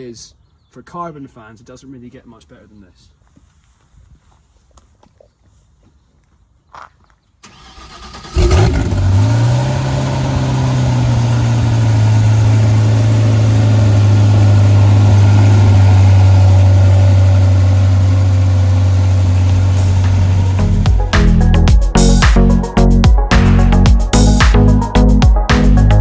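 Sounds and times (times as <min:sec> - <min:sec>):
car engine starting and idling: 0:07.4 - 0:26.0.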